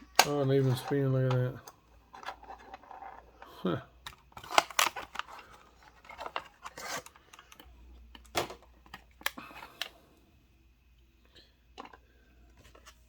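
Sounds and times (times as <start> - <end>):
plastic packaging clicking and crackling: 0.0 - 3.2, 4.0 - 9.9.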